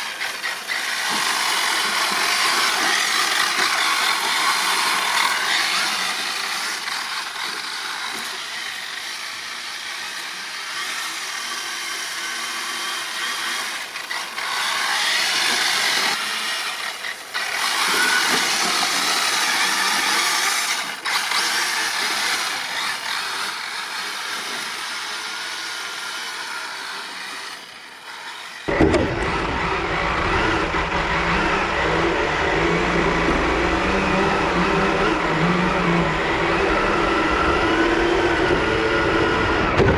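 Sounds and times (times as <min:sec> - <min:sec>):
electric toy car motor whining: 0:00.0 - 0:39.9
deep rattle and rumble: 0:28.7 - 0:39.9.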